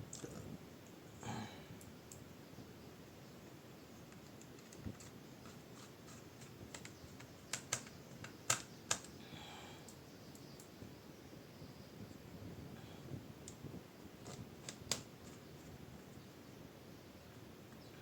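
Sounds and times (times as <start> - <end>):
light ticks of laptop parts: 4.0 - 9.2, 9.8 - 10.8, 13.4 - 13.6, 14.2 - 15.7
sharp clicks: 4.1 - 9.2, 14.2 - 15.4.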